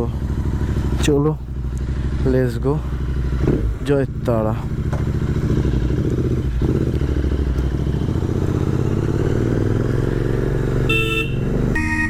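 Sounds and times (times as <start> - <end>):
motorcycle engine pulling away: 4.7 - 11.8
vehicle horn: 10.8 - 12.0.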